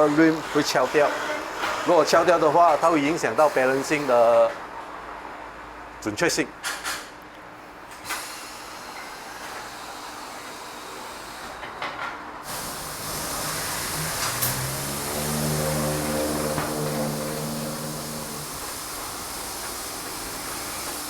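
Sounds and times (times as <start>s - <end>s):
wheel balancing machine motor hum: 12.5s - 21.0s.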